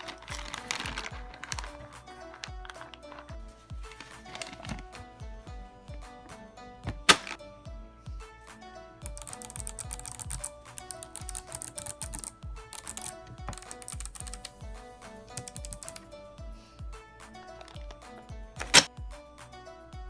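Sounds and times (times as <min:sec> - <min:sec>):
clicky mechanical keyboard typing: 0:00.0 - 0:03.3, 0:09.1 - 0:14.6, 0:15.4 - 0:16.1.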